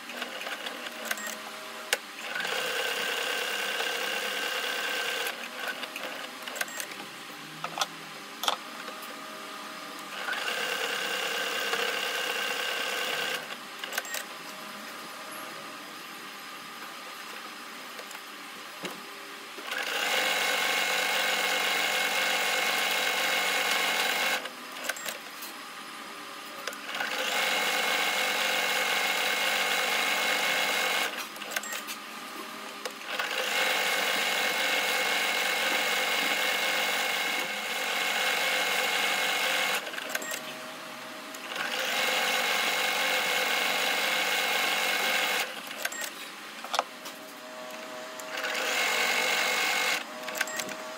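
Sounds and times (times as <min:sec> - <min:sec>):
sewing machine stitching: 0:02.2 - 0:06.8, 0:10.1 - 0:14.2, 0:19.6 - 0:25.2, 0:26.8 - 0:31.8, 0:33.0 - 0:40.4, 0:41.4 - 0:46.1, 0:48.2 - 0:50.8.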